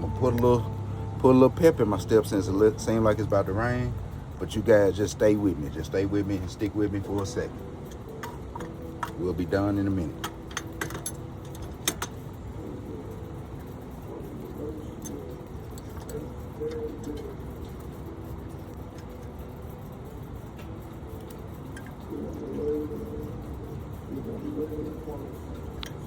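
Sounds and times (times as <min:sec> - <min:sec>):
dove cooing: 0:05.4 - 0:26.0
metallic clinks of tools: 0:07.1 - 0:12.4.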